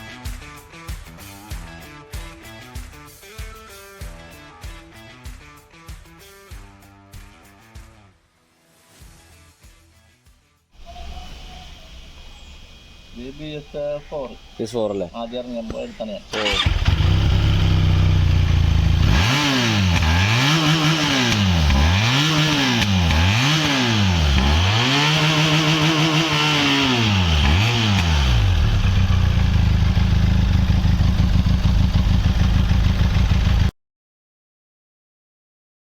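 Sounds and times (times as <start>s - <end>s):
motorcycle engine idling and revving: 15.6s - 33.7s.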